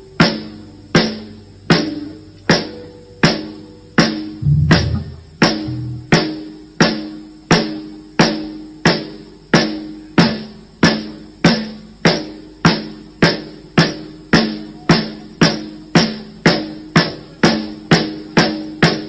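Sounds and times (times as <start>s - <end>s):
drum kit pounding a beat: 0.0s - 19.0s
held low note: 4.4s - 6.2s.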